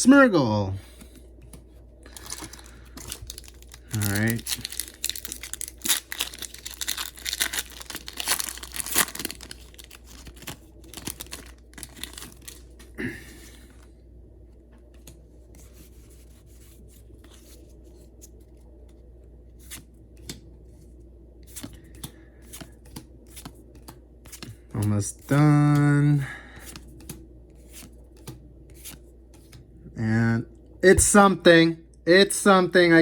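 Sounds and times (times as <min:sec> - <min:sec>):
foil wrapper tearing and crinkling: 0:02.1 - 0:12.8.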